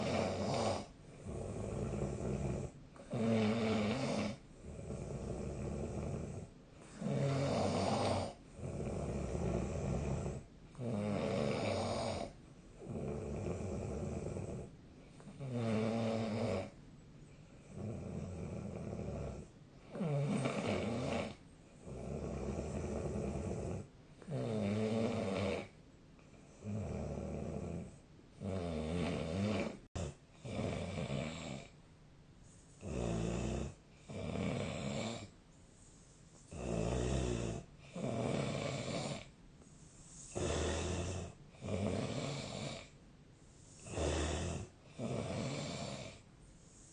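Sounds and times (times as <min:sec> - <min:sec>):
person snoring: 0:00.0 - 0:16.8, 0:17.6 - 0:25.8, 0:26.5 - 0:31.8, 0:32.8 - 0:35.3, 0:36.4 - 0:39.3, 0:40.1 - 0:43.0, 0:43.6 - 0:46.9
soft breathing: 0:32.4 - 0:33.0, 0:35.2 - 0:46.9.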